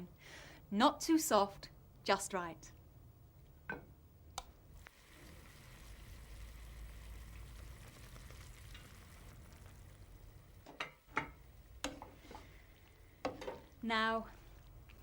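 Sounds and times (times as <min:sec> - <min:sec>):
food sizzling in a pan: 0:04.7 - 0:15.0.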